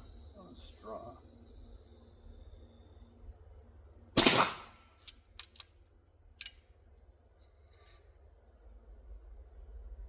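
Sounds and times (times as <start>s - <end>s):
air rifle shot: 4.2s - 4.9s.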